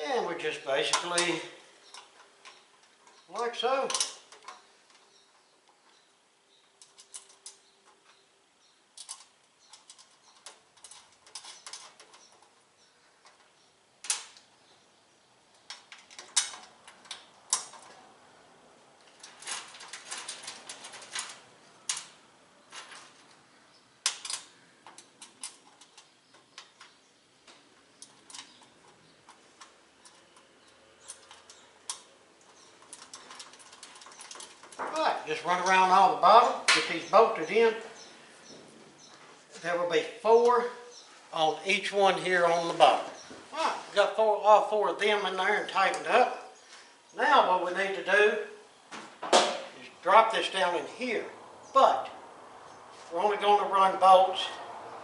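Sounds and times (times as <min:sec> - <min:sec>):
metal screws and nuts clicking: 0:00.9 - 0:06.0, 0:06.7 - 0:08.2, 0:08.9 - 0:14.5, 0:19.0 - 0:23.4, 0:24.0 - 0:35.0.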